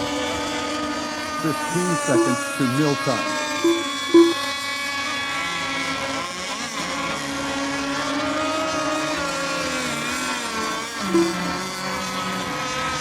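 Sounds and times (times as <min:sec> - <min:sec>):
short beep: 0:01.5 - 0:04.4, 0:11.2 - 0:11.4.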